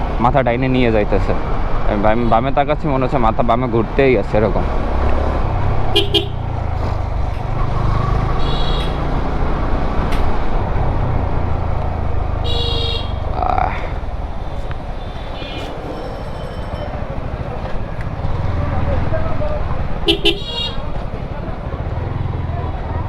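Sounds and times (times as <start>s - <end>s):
motorcycle engine rumble: 0.0s - 23.0s
vehicle horn toots: 5.9s - 6.4s, 8.4s - 9.2s, 12.4s - 13.3s, 14.3s - 16.2s, 20.0s - 21.1s.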